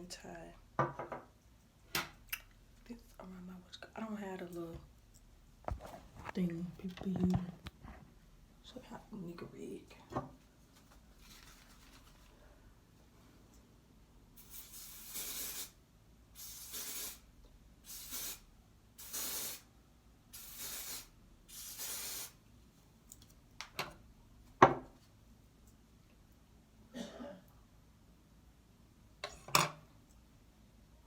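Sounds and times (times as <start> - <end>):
aerosol spray can hissing: 14.4 - 15.8, 16.4 - 19.7, 20.4 - 22.4.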